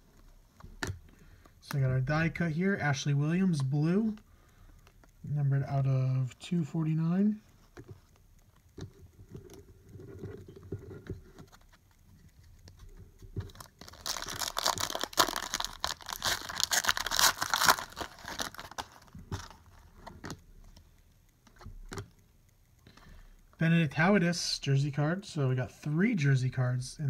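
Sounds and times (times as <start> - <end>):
plastic wrapper crinkling: 7.6 - 20.4
plastic wrapper tearing: 13.5 - 20.4.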